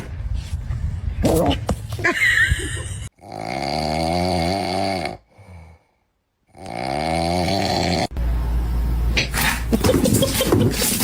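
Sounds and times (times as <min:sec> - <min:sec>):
person snoring: 0:03.2 - 0:08.1.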